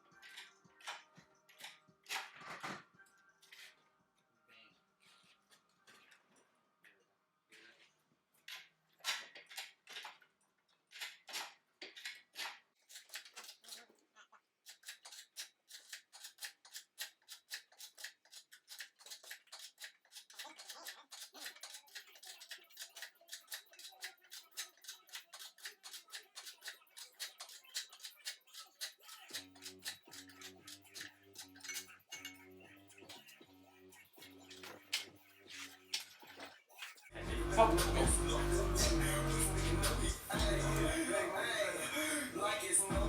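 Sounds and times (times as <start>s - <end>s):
hand ratchet clicking: 14.6s - 41.0s.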